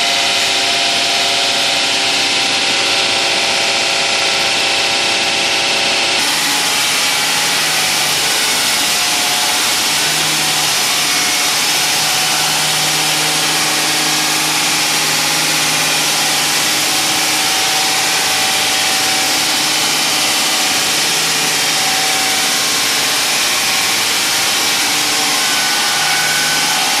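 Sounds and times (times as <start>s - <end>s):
saw motor hum: 6.1s - 27.0s
saw blade grinding concrete: 6.2s - 27.0s.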